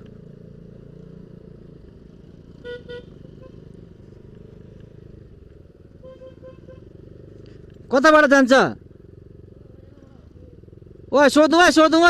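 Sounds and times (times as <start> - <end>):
motor scooter engine rumble: 0.0 - 7.9, 8.8 - 11.2
horn toots and beeps: 2.5 - 3.7, 6.0 - 7.0.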